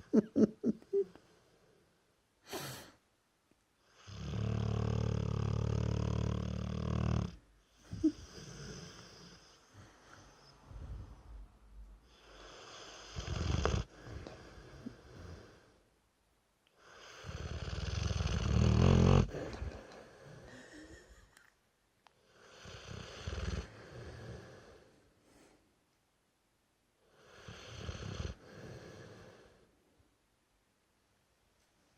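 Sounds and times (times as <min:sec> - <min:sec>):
dog snoring loudly: 0:03.9 - 0:07.4, 0:12.2 - 0:14.6, 0:16.9 - 0:19.7, 0:22.4 - 0:24.7, 0:27.2 - 0:29.4.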